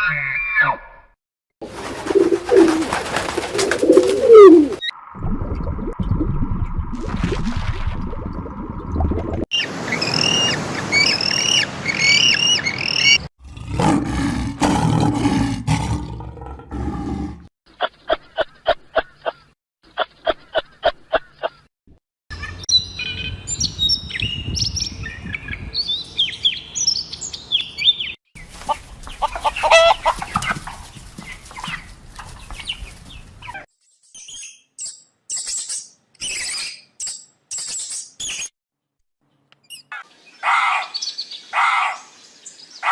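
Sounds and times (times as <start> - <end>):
small birds chirping: 22.3 - 38.5.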